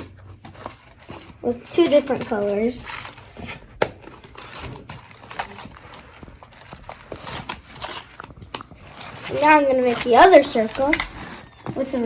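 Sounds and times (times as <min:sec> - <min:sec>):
plastic track pieces clicking: 0:03.9 - 0:11.6.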